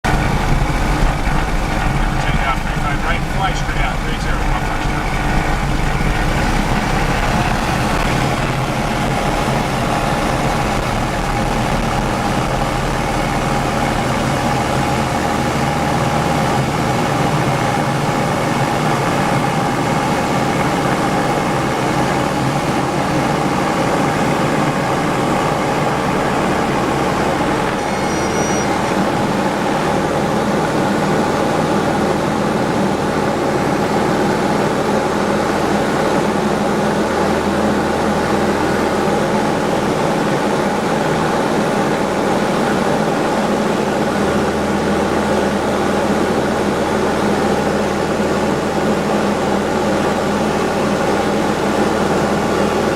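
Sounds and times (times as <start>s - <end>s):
propeller aircraft engine drone: 0.0s - 52.9s
faint high tone: 27.7s - 29.1s.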